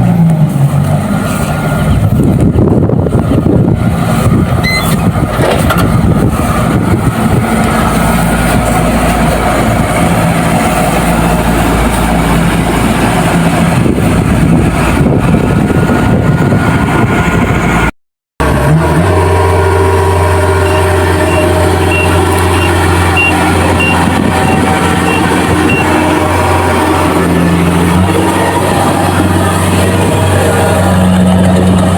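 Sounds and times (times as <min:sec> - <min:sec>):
combine harvester running: 0:00.0 - 0:31.9
short high beeps: 0:04.6 - 0:05.0, 0:20.6 - 0:25.9.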